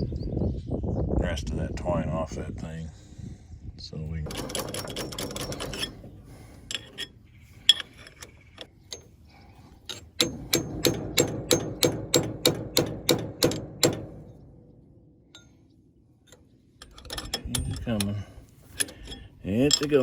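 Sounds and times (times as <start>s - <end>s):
metal clinks: 4.3s - 12.3s, 15.3s - 15.6s, 16.3s - 20.0s
hammer striking steel chain: 10.2s - 14.2s.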